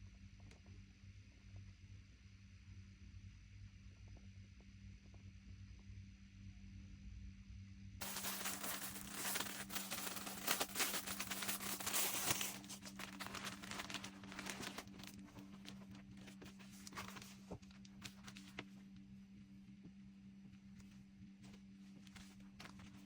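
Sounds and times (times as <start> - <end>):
packaging crinkling and rustling: 8.0 - 18.6.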